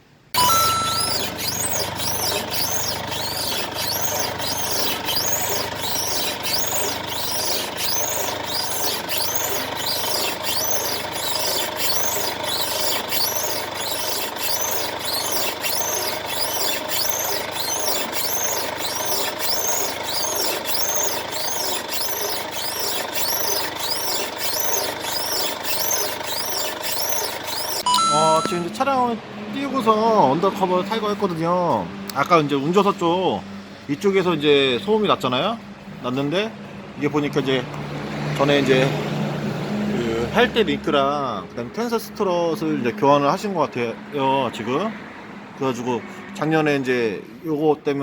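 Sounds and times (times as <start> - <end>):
high chirping suspension squeak: 0.4 - 28.7.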